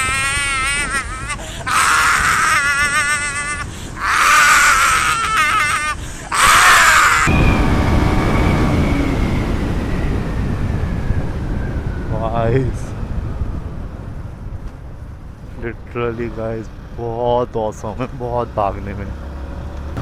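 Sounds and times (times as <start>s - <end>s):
high-pitched screaming: 0.0s - 9.6s
wind noise: 0.0s - 18.4s
motorcycle running: 7.2s - 12.1s, 12.8s - 20.0s.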